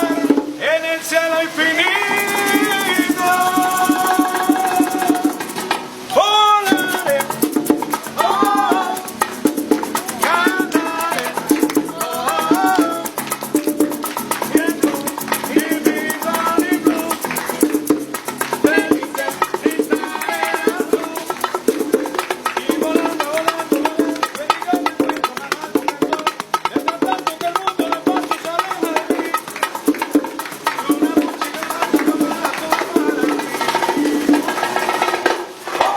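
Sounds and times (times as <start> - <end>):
shaker rhythm: 0.0 - 0.7, 1.6 - 35.9
knocking percussion: 2.2 - 5.9, 6.7 - 35.9
wavering melody: 6.8 - 24.4.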